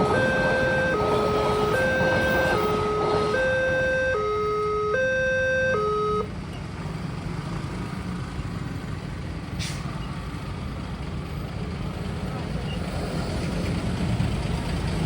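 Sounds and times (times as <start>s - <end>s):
two-tone crossing alarm: 0.0s - 6.3s
traffic and engine rumble: 0.0s - 15.0s.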